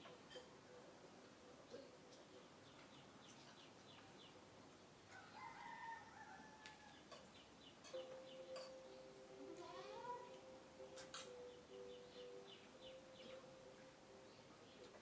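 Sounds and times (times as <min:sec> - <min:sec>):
faint rooster crowing: 0:05.1 - 0:07.3.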